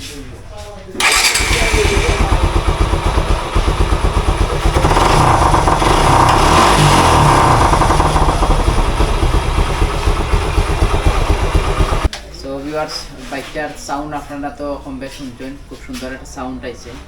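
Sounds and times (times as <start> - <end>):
motorcycle engine idling and revving: 1.0 - 12.1.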